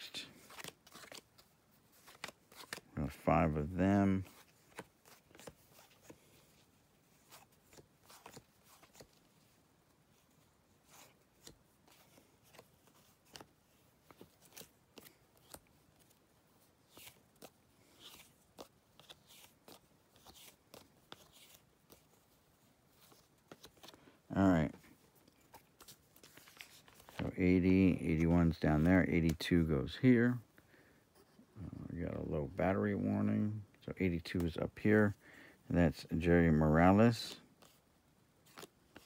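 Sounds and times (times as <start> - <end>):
cardboard cards clicking and rustling: 0.3 - 3.3, 16.8 - 24.1, 24.7 - 29.6.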